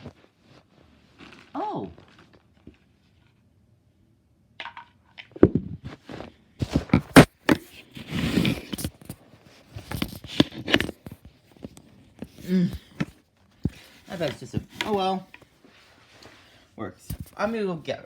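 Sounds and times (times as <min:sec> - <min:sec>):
plastic scraping and rattling: 0:06.6 - 0:15.5.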